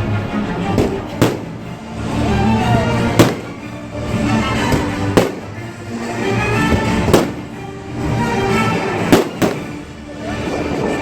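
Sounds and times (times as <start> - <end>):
music: 0.0 - 11.0
fireworks bangs: 0.7 - 1.6, 3.0 - 3.7, 4.7 - 5.6, 6.7 - 7.5, 9.0 - 9.9.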